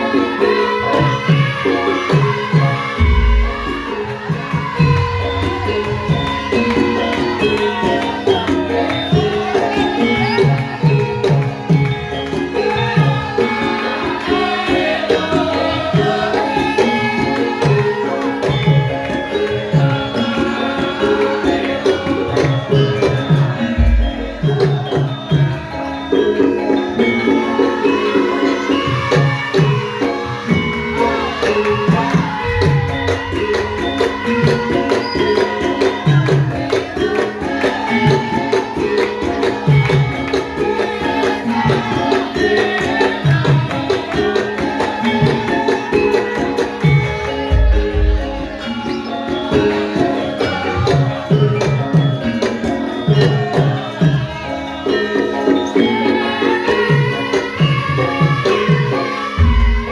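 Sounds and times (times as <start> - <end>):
ringing metal percussion: 0.0 - 59.9
hand drum strokes: 2.4 - 8.5, 43.0 - 51.9, 57.7 - 59.9
deep low drum stroke: 3.0 - 4.0.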